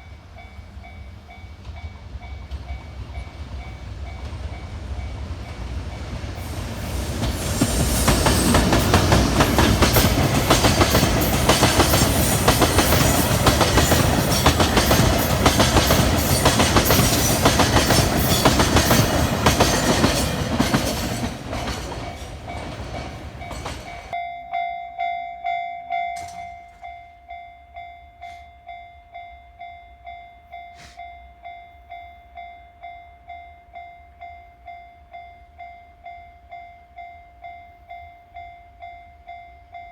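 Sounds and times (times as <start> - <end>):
train wheels clattering over rail joints: 6.8 - 24.2
level crossing alarm ringing: 21.9 - 29.3.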